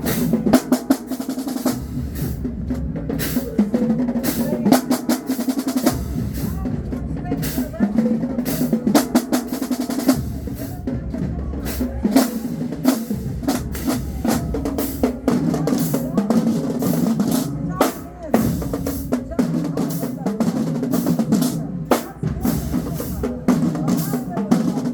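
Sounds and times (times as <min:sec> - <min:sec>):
snare drums: 0:00.0 - 0:24.9
bass drum booms: 0:01.6 - 0:04.8, 0:05.8 - 0:09.4, 0:10.0 - 0:20.0.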